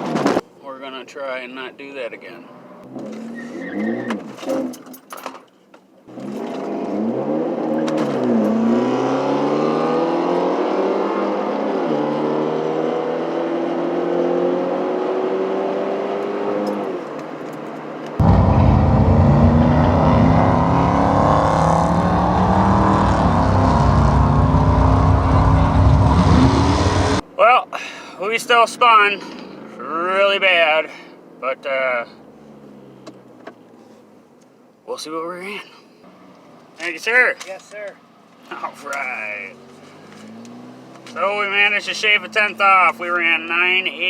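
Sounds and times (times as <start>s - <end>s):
car engine accelerating hard: 6.1s - 16.9s, 18.2s - 27.2s, 39.4s - 41.6s
loud low rumble: 18.2s - 27.2s
tires spinning: 18.2s - 27.2s.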